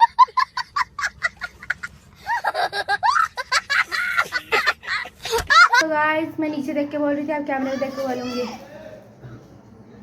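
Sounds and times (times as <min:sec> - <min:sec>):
person giggling: 0:00.0 - 0:05.8.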